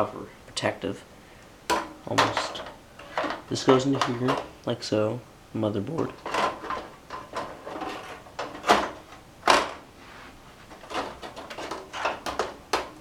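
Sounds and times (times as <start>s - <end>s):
scrapes against metal chassis: 6.1s - 9.1s.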